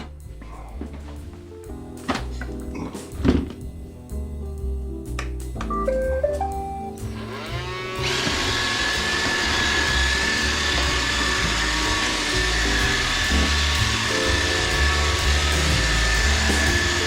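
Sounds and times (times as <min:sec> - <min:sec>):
robot vacuum whining: 0:07.0 - 0:17.0.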